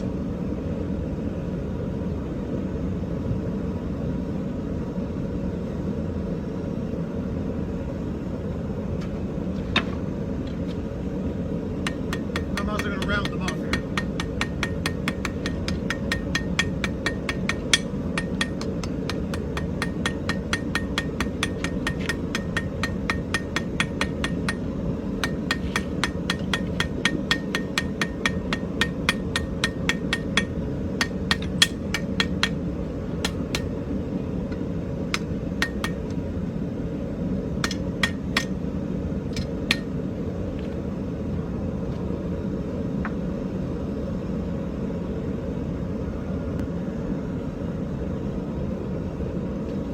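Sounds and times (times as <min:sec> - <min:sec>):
hammer striking hot iron on anvil: 0:11.8 - 0:33.8, 0:34.5 - 0:36.2, 0:37.6 - 0:38.6, 0:39.4 - 0:39.9.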